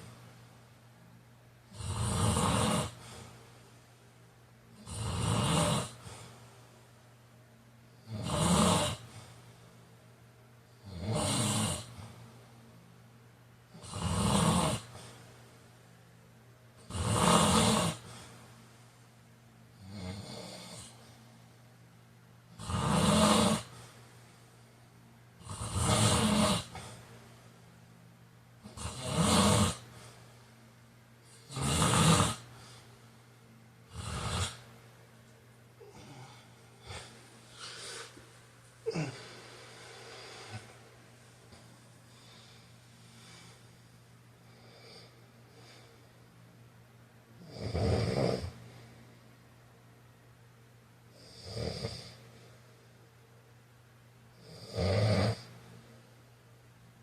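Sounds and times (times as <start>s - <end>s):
man snoring: 1.7s - 3.3s, 4.8s - 6.2s, 8.0s - 9.1s, 10.8s - 12.1s, 13.7s - 15.2s, 16.8s - 18.2s, 19.8s - 21.0s, 22.5s - 23.8s, 25.4s - 27.0s, 28.6s - 30.0s, 31.3s - 32.5s, 33.9s - 34.6s, 38.8s - 40.8s, 47.4s - 48.6s, 51.2s - 52.2s, 54.4s - 55.5s.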